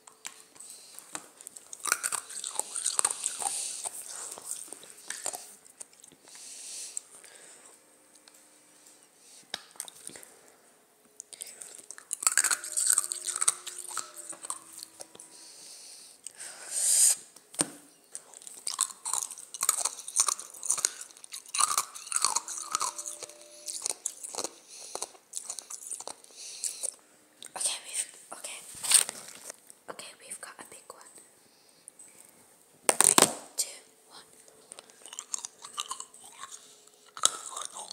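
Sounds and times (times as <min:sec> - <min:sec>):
ice cubes crunched between teeth: 0:01.4 - 0:06.0, 0:11.4 - 0:14.9, 0:18.4 - 0:26.3, 0:32.9 - 0:33.4, 0:34.8 - 0:37.9
short breath hiss: 0:15.4 - 0:17.3.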